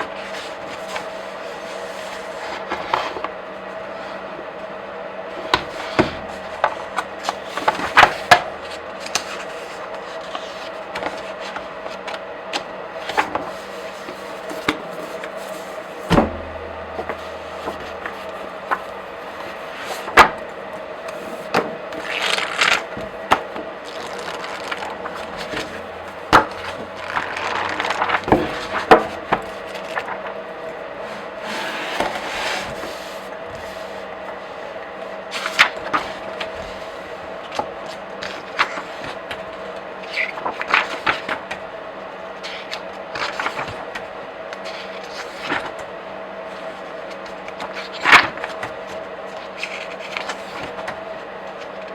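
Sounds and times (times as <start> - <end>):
paper sliding over paper: 0.0 - 4.7, 5.3 - 41.5
comic book pages flipping: 5.4 - 34.4, 42.4 - 45.8, 46.6 - 51.8.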